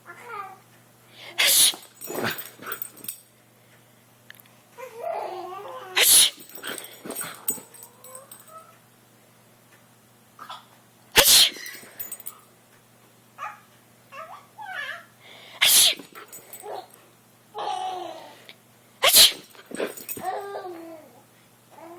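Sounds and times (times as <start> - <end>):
person sneezing loudly: 1.3 - 3.1, 6.0 - 7.8, 11.2 - 12.1, 15.6 - 16.6, 19.0 - 20.3
dog whining and yelping: 1.4 - 3.2, 4.8 - 8.7, 19.0 - 21.1.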